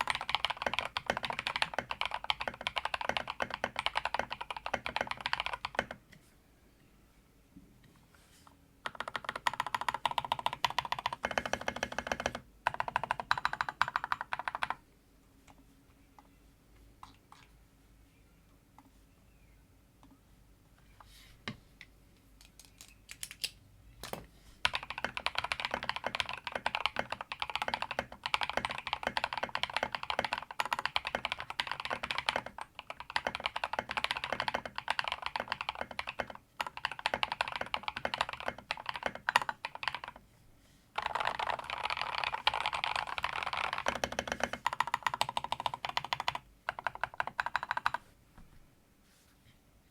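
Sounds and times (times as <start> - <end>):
mechanical keyboard typing: 0.0 - 6.0, 8.8 - 14.8, 24.6 - 40.2, 41.0 - 48.0.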